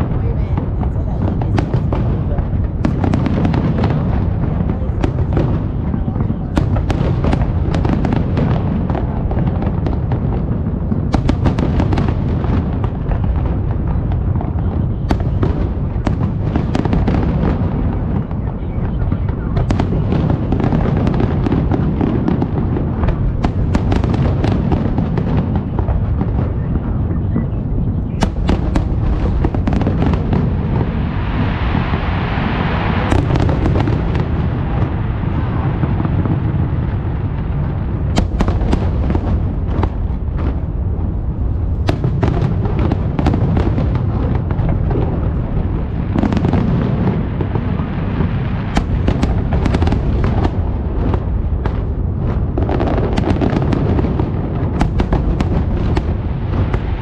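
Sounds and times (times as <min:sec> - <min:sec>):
fireworks booming: 0:00.0 - 0:57.0
fireworks cracking: 0:00.0 - 0:57.0
fireworks crackling hiss: 0:28.2 - 0:57.0.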